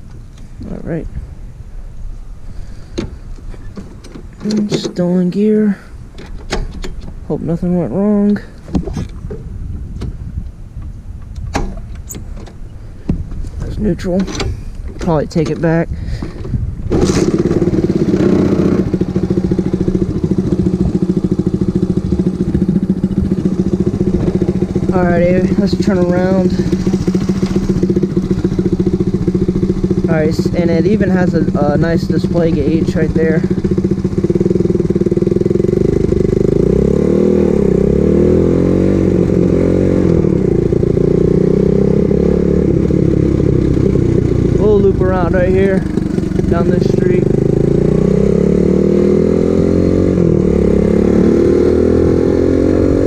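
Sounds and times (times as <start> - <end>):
small motorbike engine idling: 18.8 - 36.6, 42.8 - 47.9.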